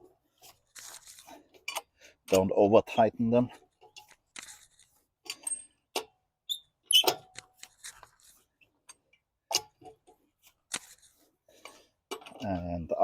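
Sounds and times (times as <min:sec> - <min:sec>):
hand tools clinking on wheel bolts: 0:05.2 - 0:06.2.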